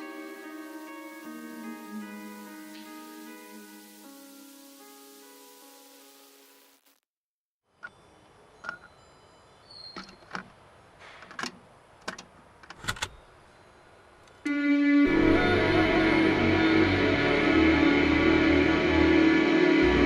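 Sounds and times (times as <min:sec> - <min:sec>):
background music: 0:00.0 - 0:06.4, 0:14.5 - 0:20.0
faint hiss: 0:00.0 - 0:06.8.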